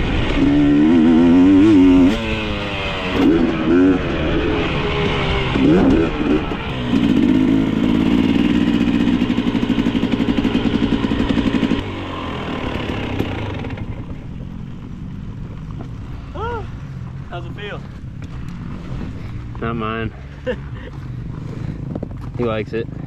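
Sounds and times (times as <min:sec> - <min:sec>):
dirt bike engine revving: 0:00.0 - 0:14.8, 0:18.2 - 0:21.9.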